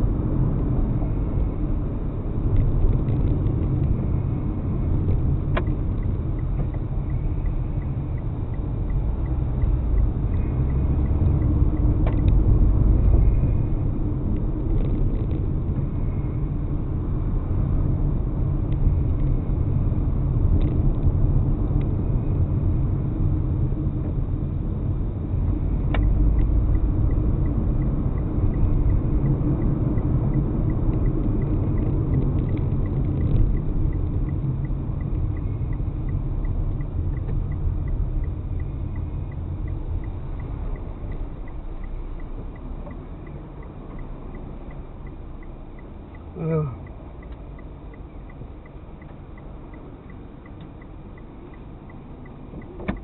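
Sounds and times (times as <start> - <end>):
car road and engine rumble: 0.0 - 53.0
faint regular ticking: 5.1 - 12.5, 25.9 - 53.0.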